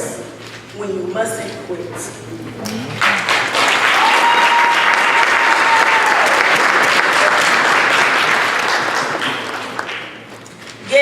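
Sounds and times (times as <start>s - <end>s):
held high tone: 2.3s - 3.7s
audience applauding: 2.4s - 10.3s.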